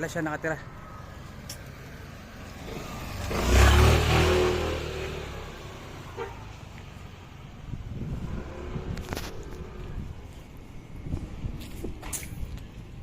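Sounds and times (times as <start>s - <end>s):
street noise: 0.0s - 13.0s
motor vehicle passing: 0.8s - 6.7s, 7.7s - 10.6s.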